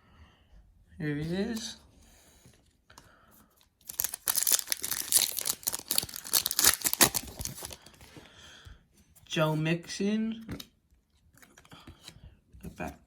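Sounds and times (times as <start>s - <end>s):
foil wrapper tearing and crinkling: 3.8s - 7.8s.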